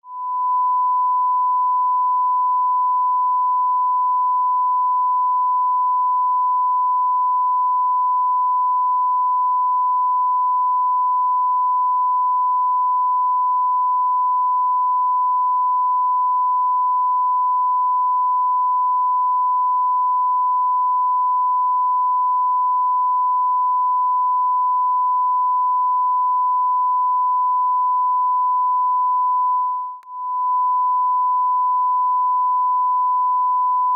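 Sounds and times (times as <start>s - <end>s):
steady sine-wave test tone: 0.0s - 33.9s.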